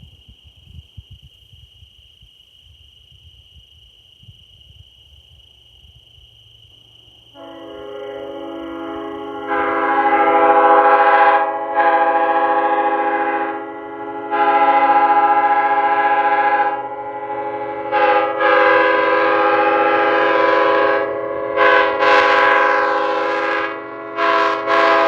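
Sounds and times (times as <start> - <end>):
locomotive air horn: 7.3 - 25.0.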